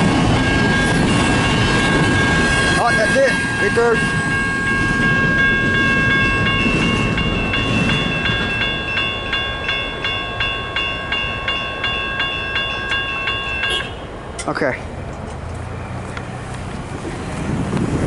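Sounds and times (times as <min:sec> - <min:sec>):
crossing warning bell ringing: 0:00.0 - 0:14.8
freight train rumbling past: 0:00.0 - 0:18.0.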